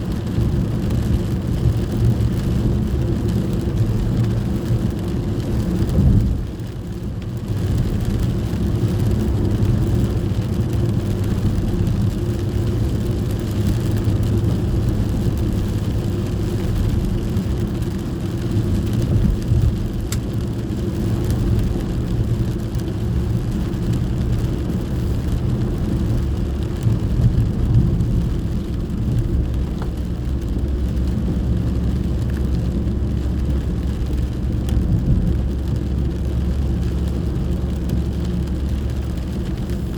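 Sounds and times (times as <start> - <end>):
car road and engine rumble: 0.0 - 39.9
rain hissing on car: 0.0 - 39.9.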